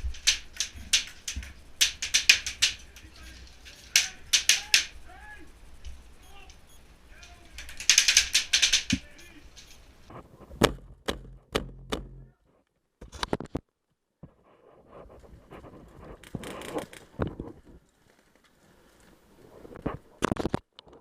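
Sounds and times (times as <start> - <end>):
airsoft rifle firing: 0.0 - 5.1, 7.2 - 9.7.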